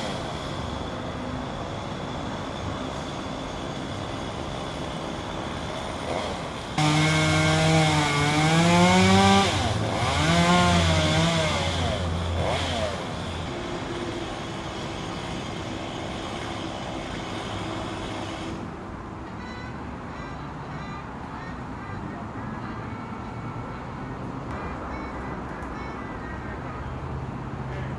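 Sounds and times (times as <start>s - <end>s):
chainsaw revving and idling: 0.0s - 0.7s, 4.4s - 18.6s.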